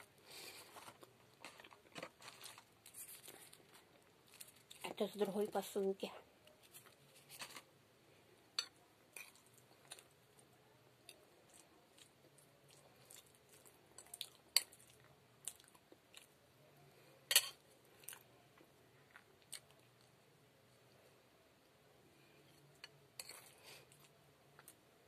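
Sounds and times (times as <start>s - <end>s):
person chewing: 11.0s - 16.4s.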